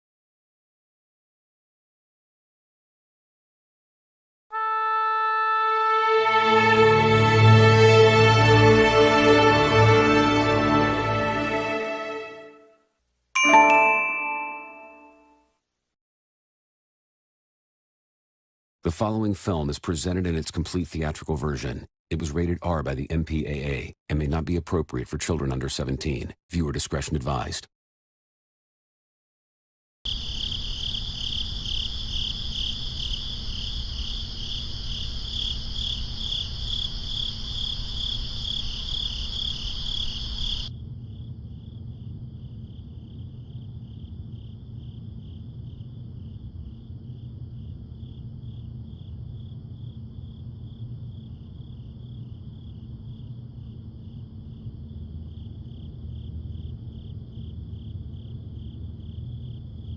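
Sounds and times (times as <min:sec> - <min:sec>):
crickets chirping: 0:30.1 - 0:59.9.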